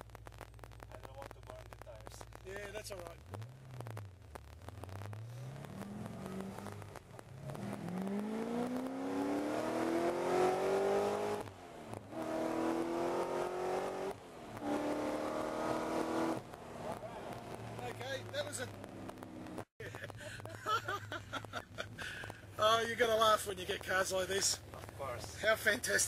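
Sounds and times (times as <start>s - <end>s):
car engine accelerating hard: 3.1s - 19.6s.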